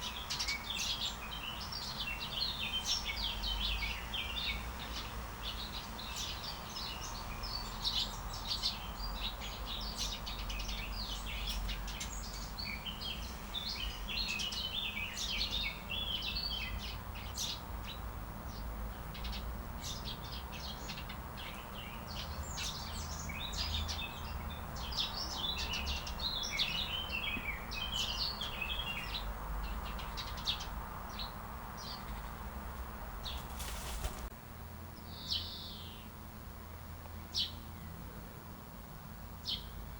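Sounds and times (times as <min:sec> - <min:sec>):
songbirds chirping and twittering: 0:00.0 - 0:39.9.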